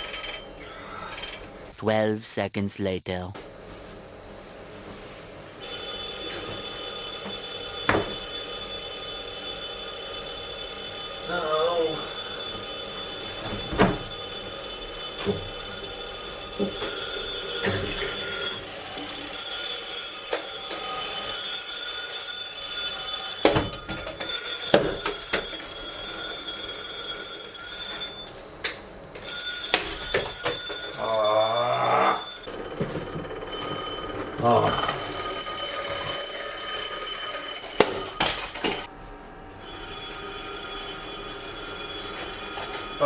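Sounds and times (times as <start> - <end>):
alarm clocks beeping: 0.0 - 1.7, 5.6 - 38.9, 39.6 - 43.0.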